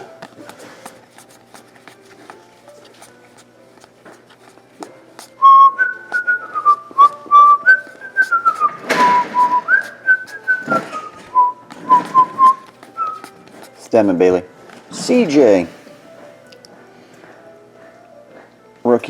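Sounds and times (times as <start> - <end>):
person whistling a tune: 5.4 - 13.3.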